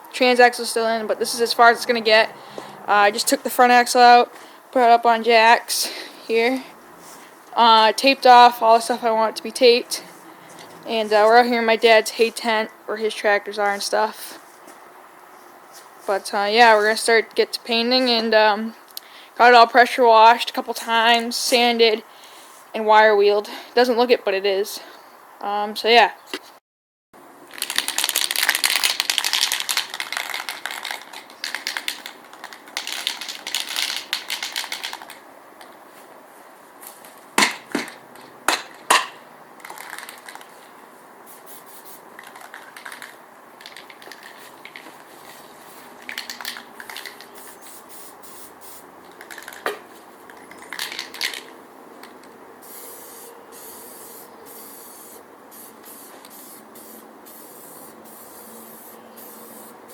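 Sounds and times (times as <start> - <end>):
spray paint can hissing: 27.6 - 35.1, 41.3 - 49.7, 52.6 - 59.9.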